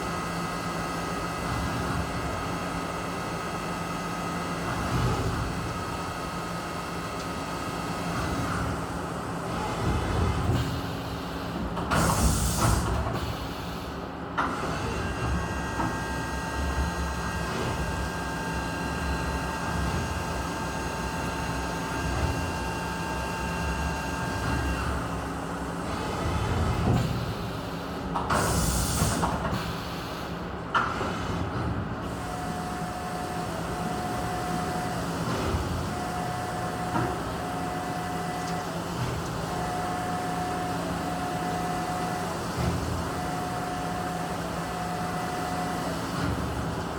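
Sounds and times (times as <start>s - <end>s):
machining center running: 32.0s - 46.9s.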